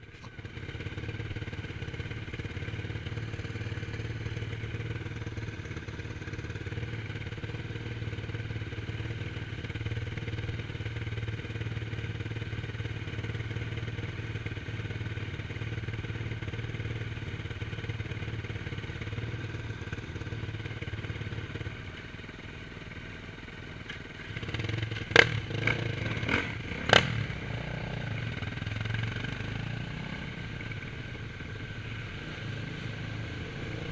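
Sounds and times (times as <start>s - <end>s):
engine running steadily: 0.0s - 33.9s.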